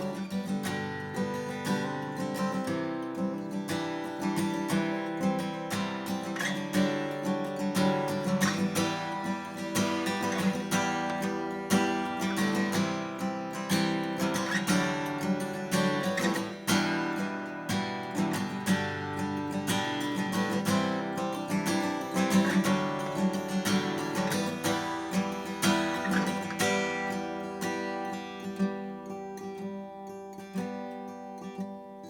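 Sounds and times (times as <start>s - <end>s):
acoustic guitar strumming chords: 0.0s - 32.0s.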